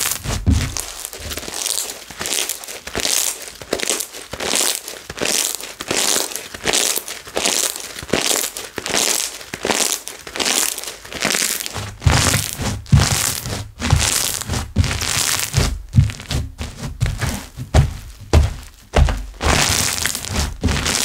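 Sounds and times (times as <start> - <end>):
slime squishing: 0.0 - 21.0.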